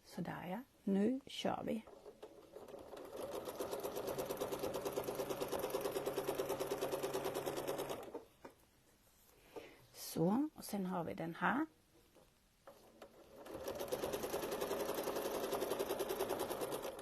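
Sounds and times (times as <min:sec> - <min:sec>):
sewing machine stitching: 0:01.7 - 0:08.3, 0:12.6 - 0:17.0.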